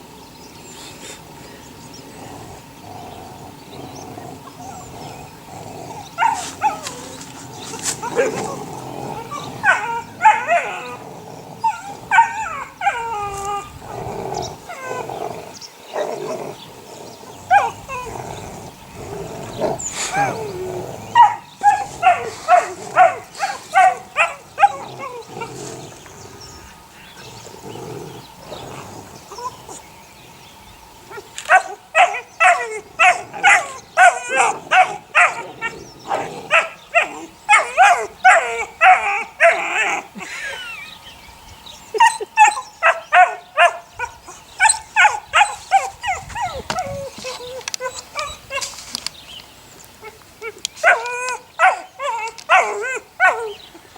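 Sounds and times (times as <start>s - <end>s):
puppies whining: 3.9s - 16.6s, 17.3s - 29.9s, 31.1s - 40.8s, 41.8s - 48.8s, 50.0s - 53.9s
puppies yipping: 6.0s - 11.0s, 11.6s - 13.7s, 17.5s - 18.1s, 19.6s - 25.6s, 31.1s - 40.3s, 41.9s - 48.8s, 50.0s - 53.8s.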